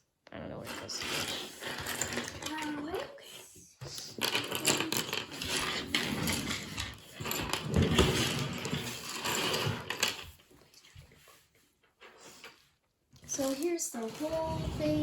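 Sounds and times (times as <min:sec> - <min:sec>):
plastic toy pieces clattering: 0:00.8 - 0:02.9, 0:03.9 - 0:10.4, 0:13.3 - 0:14.3.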